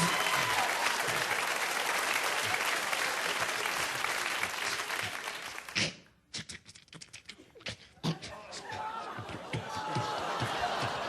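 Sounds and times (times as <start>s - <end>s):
audience applauding: 0.0s - 5.8s, 8.9s - 11.0s.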